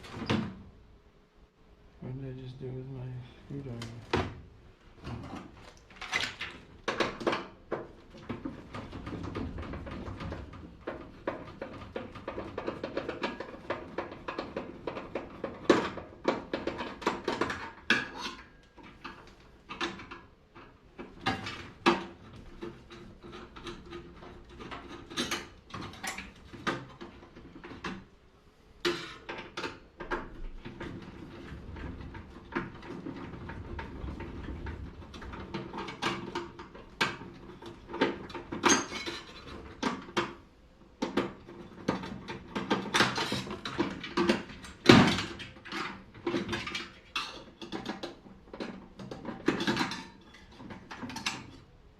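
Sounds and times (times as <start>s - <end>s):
metal parts clanking and rattling: 29.0s - 40.2s, 41.1s - 51.6s.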